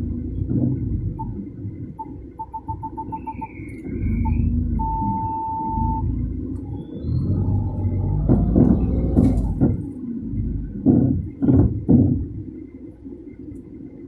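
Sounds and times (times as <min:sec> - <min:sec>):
short thumps and clunks: 0:00.0 - 0:02.9, 0:05.8 - 0:12.6
car engine low rumble: 0:00.0 - 0:14.0.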